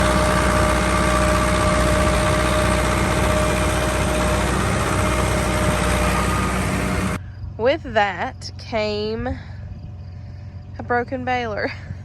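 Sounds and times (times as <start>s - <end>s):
tractor engine running: 0.0s - 9.2s.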